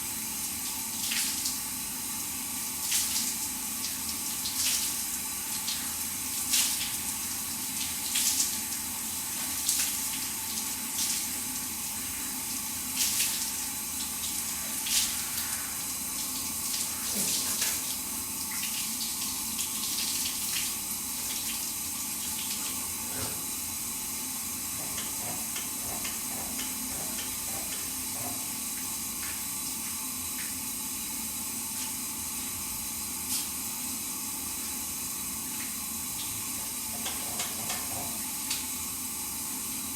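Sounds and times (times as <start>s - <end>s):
shower water spraying: 0.3s - 23.6s, 31.6s - 33.8s.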